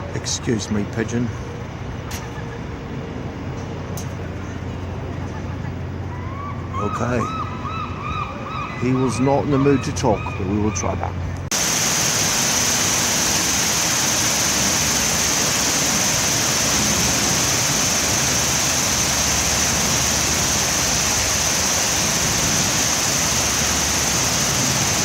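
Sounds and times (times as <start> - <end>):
loud steady hiss: 11.5 - 25.0.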